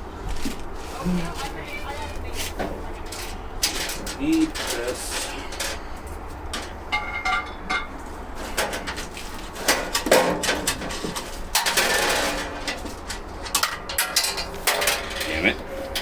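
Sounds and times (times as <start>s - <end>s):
metal scraping rattle: 2.5s - 16.0s
steel parts clanking: 3.0s - 16.0s
metallic ring: 6.9s - 7.9s.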